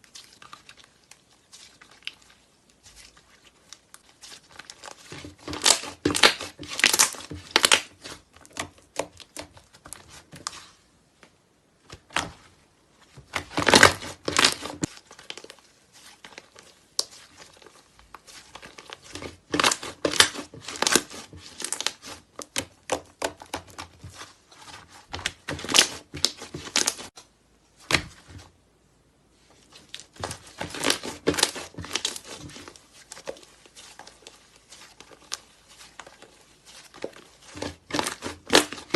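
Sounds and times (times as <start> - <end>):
slime crackling and popping: 3.0 - 10.6, 13.2 - 17.7, 18.3 - 27.2, 29.8 - 38.9.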